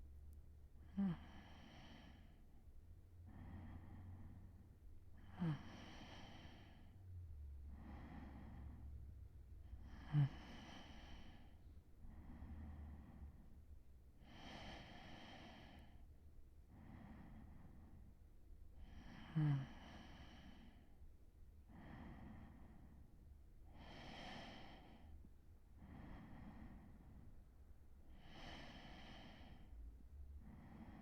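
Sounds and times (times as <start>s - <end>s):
man breathing slowly: 0.8s - 31.0s.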